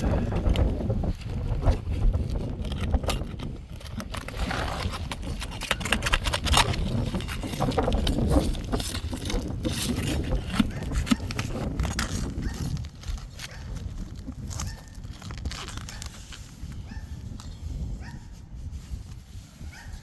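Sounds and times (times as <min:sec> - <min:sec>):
hand tools scraping and knocking: 0:00.0 - 0:16.5.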